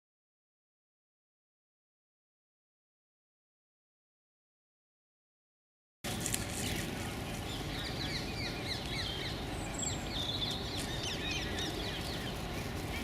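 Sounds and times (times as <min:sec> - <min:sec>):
small birds chirping: 0:06.2 - 0:13.0.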